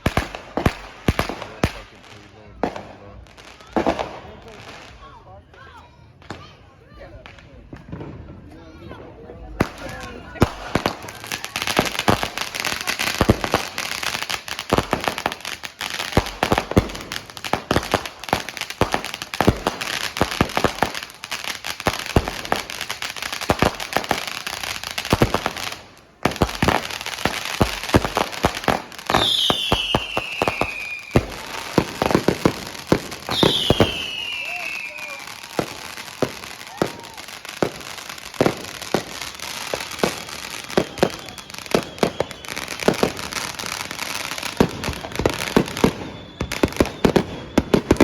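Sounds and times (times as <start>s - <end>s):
fireworks crackling and banging: 0.0s - 48.0s
firework whistle falling in pitch: 29.1s - 37.3s, 39.8s - 48.0s.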